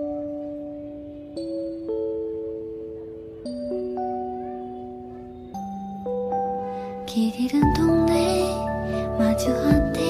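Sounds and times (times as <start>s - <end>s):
soft chiming mallet notes: 0.0s - 10.0s.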